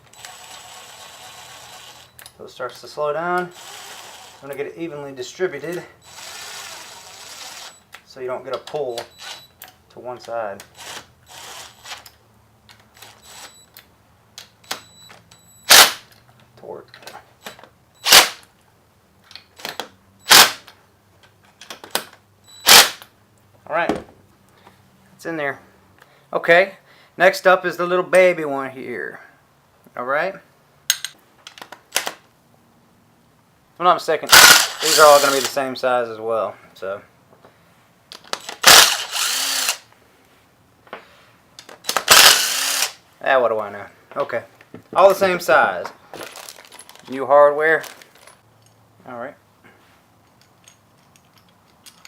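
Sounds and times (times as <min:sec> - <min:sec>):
power driver spinning bolts: 0:34.3 - 0:35.6, 0:38.2 - 0:39.9, 0:41.7 - 0:43.0.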